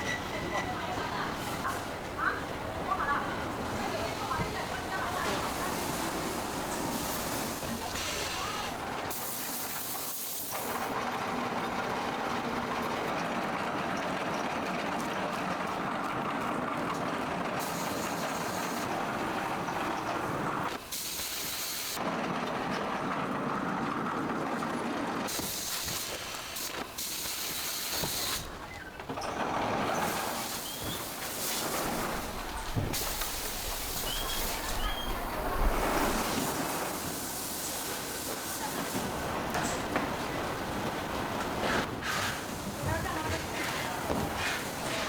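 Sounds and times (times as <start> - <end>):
factory machinery hissing: 0.0 - 11.0, 17.6 - 22.0, 25.3 - 45.0.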